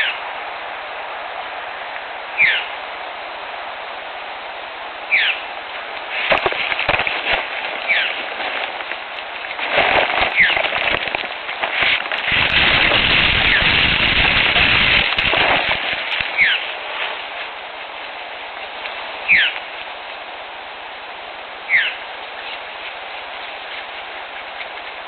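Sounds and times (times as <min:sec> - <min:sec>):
bird call sliding downward: 0:02.4 - 0:02.7
close crackling and rustling: 0:05.6 - 0:20.4, 0:21.9 - 0:25.0.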